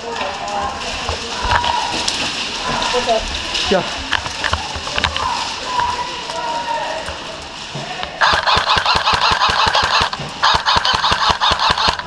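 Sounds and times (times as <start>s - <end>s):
airsoft gun rapid fire: 8.2s - 12.0s.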